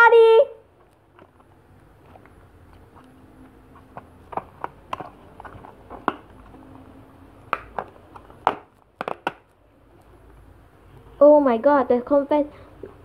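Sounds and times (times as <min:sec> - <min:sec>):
plastic tab snapping: 0:07.5 - 0:09.5.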